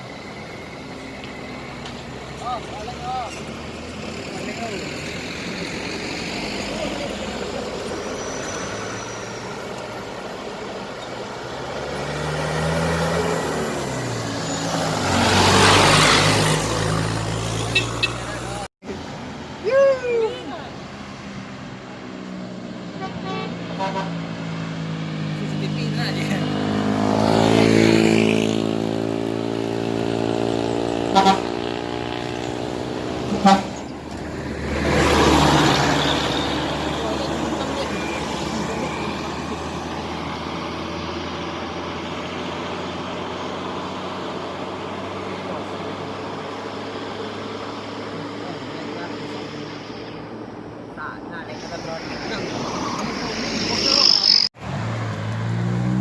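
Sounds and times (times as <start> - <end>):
vehicle rushing past: 0.0 - 19.8, 23.6 - 56.0
diesel engine drone: 0.0 - 56.0
horn toots: 17.6 - 18.6, 23.0 - 24.3, 31.0 - 31.8, 33.2 - 33.9
bus engine running: 28.5 - 54.8.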